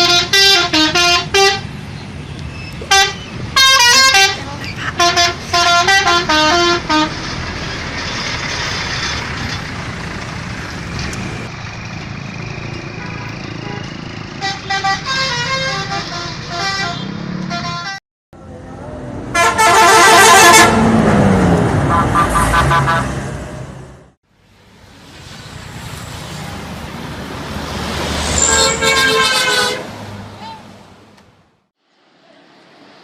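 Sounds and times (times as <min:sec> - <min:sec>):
bus horn playing tunes: 0:00.0 - 0:01.7, 0:02.9 - 0:04.4, 0:05.0 - 0:07.2, 0:13.0 - 0:18.0, 0:19.3 - 0:20.8, 0:28.4 - 0:30.0
road and engine noise: 0:00.0 - 0:33.0.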